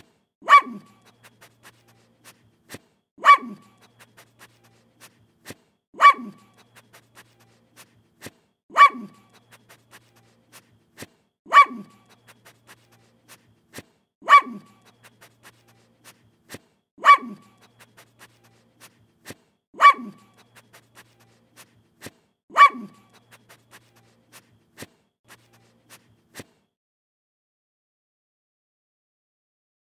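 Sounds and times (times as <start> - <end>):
dog sniffing: 0.0 - 26.6
dog barking: 0.4 - 1.2, 3.2 - 4.0, 6.0 - 6.8, 8.7 - 9.5, 11.5 - 12.2, 14.2 - 15.0, 17.0 - 17.8, 19.8 - 20.6, 22.5 - 23.3.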